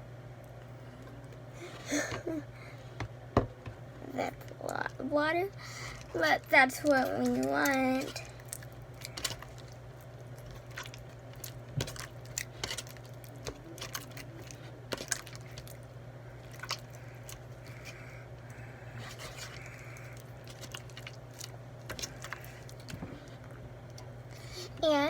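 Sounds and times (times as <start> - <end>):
steady low hum: 0.0 - 25.0
sticky clicks of slime mixing: 4.2 - 24.1.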